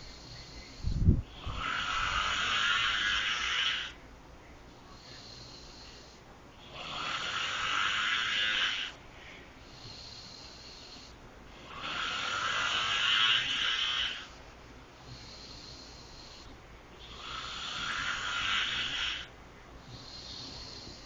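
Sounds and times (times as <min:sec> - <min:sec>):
person snoring: 0:00.0 - 0:04.0, 0:05.0 - 0:09.0, 0:09.7 - 0:14.4, 0:15.1 - 0:21.0.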